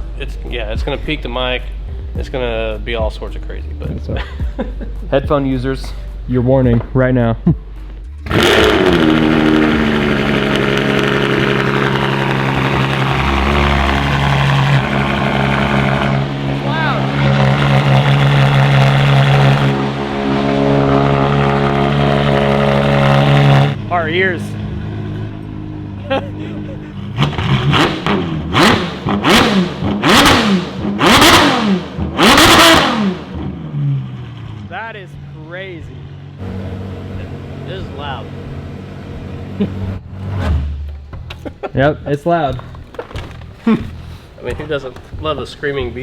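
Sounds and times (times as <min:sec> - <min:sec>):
car engine revving: 0:08.1 - 0:41.5
car engine idling loudly: 0:08.2 - 0:20.4.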